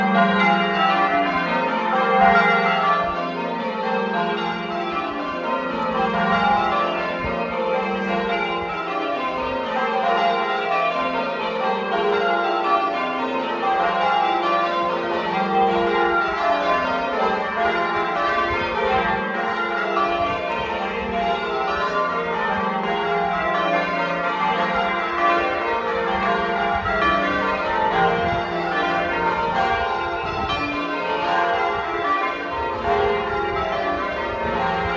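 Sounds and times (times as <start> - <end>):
church bells ringing: 0.0 - 34.9.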